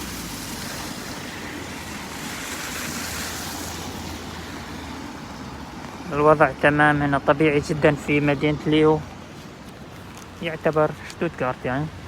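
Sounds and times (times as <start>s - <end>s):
rain falling: 0.0s - 6.1s.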